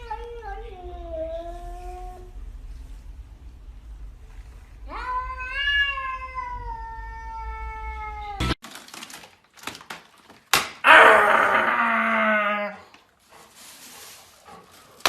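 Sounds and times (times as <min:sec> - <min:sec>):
cat meowing: 0:04.9 - 0:08.6
loud harsh cry: 0:10.8 - 0:12.8.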